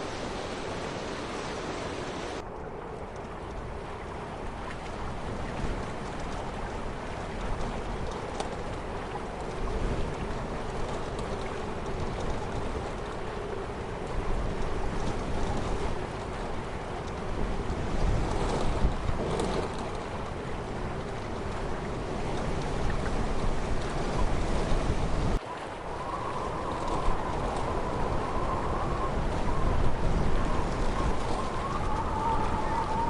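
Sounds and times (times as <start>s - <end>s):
flowing water: 0.0s - 33.0s.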